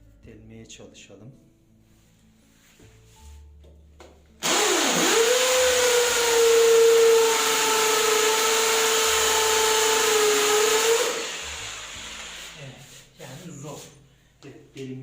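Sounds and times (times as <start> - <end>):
hammer drill drilling into stone: 4.4 - 12.5.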